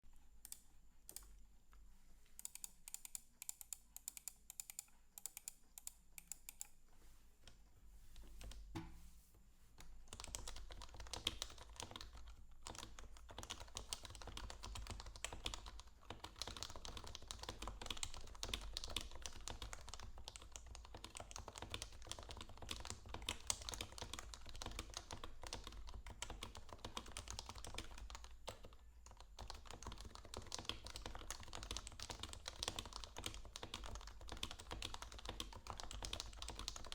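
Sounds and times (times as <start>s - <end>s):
typing on keyboard: 10.1s - 36.9s.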